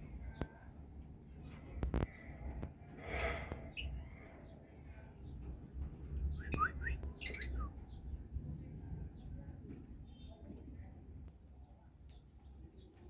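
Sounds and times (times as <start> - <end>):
bird high chirps: 6.3 - 7.7
bird rising whistled notes: 6.4 - 7.7.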